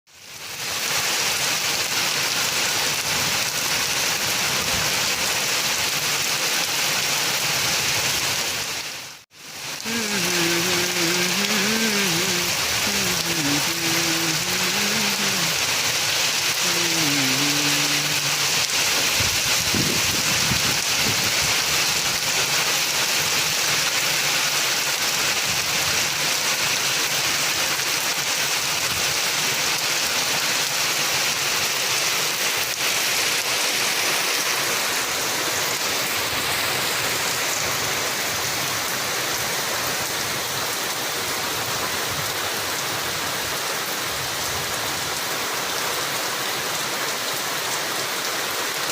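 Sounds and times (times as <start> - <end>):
heavy rain falling: 0.1 - 48.9
faint voice-like sound: 9.8 - 15.7, 16.6 - 18.5.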